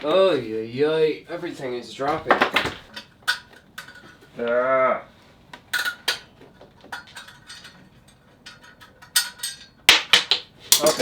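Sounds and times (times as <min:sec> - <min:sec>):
small hard objects clinking: 0:09.1 - 0:11.0.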